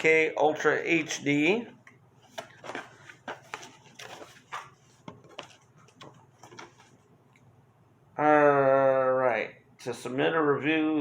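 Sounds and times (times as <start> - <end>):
paper and packaging rustling: 2.2 - 7.1.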